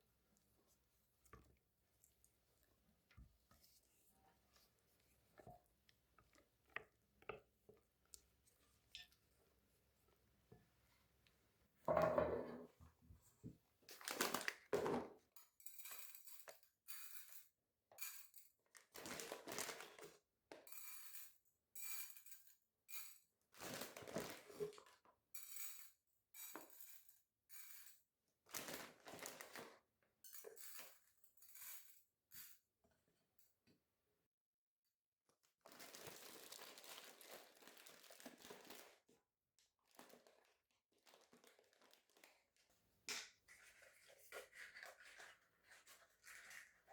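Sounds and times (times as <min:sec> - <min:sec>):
kitchen items clinking and knocking: 0:11.9 - 0:12.8.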